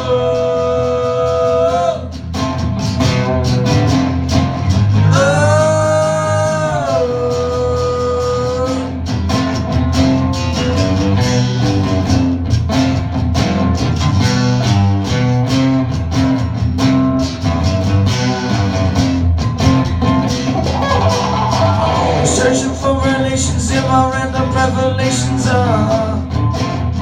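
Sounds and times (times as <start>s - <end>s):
bass line: 0.0s - 27.0s
strummed acoustic guitars: 0.0s - 27.0s
singer holding a note: 20.5s - 24.2s.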